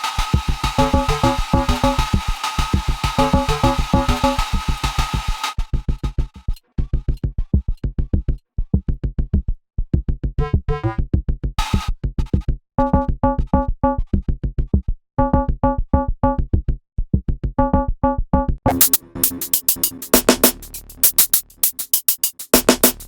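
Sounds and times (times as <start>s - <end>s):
bright hissy drum hits: 0.0s - 5.6s, 18.7s - 23.0s
synth drum hits: 0.2s - 4.4s, 18.7s - 21.9s.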